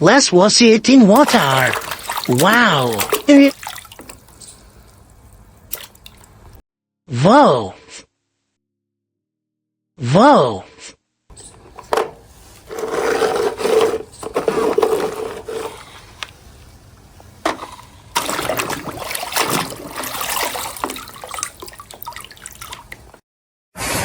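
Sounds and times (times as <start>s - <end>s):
water sloshing and splashing: 1.1s - 6.6s, 11.7s - 23.2s.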